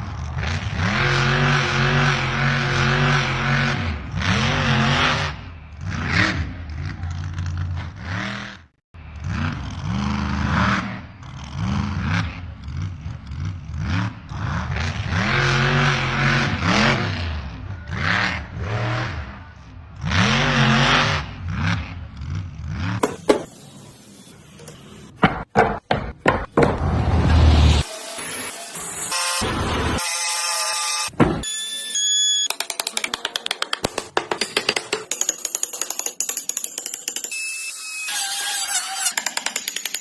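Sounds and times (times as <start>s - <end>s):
off-road engine revving hard: 0.0s - 23.1s, 26.8s - 30.0s.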